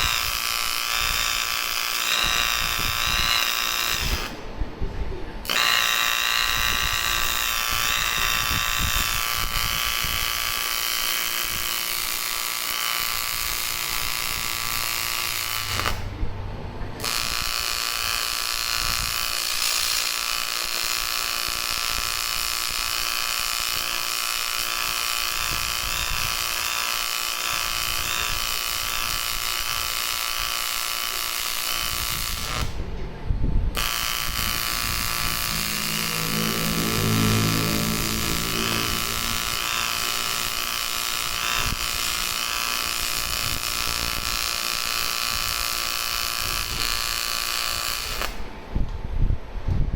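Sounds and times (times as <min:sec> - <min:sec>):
welding arc buzzing and hissing: 0:00.0 - 0:04.5, 0:05.4 - 0:33.0, 0:33.8 - 0:48.7.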